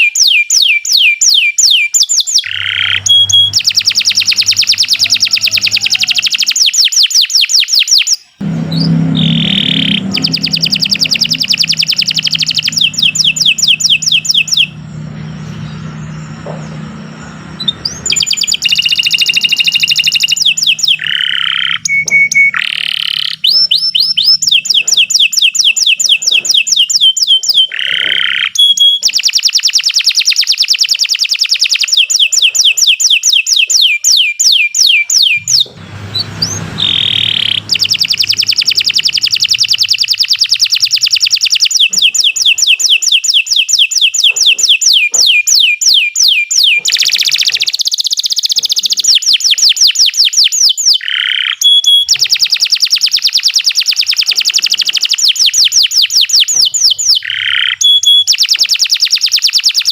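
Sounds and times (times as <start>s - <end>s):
canary singing trills: 0.0s - 59.9s
low steady hum: 2.4s - 6.4s, 8.4s - 25.2s, 35.4s - 41.1s.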